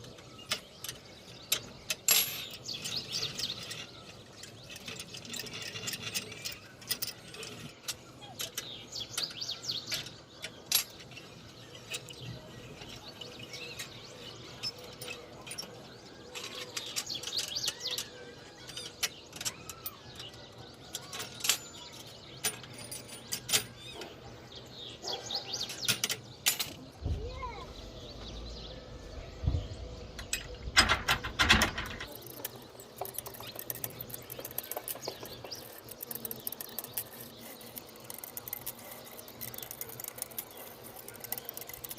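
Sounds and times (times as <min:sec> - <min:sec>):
small birds chirping: 0:00.0 - 0:41.9
sharp clicks and light knocks: 0:30.2 - 0:41.9.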